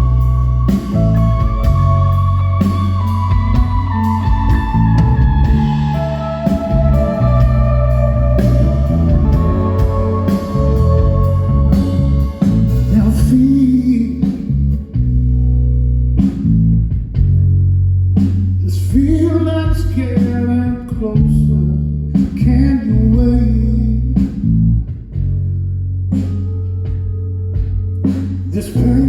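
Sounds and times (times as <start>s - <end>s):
electric guitar melody: 0.0s - 14.4s
bass notes: 0.0s - 29.0s
drums: 0.0s - 29.0s.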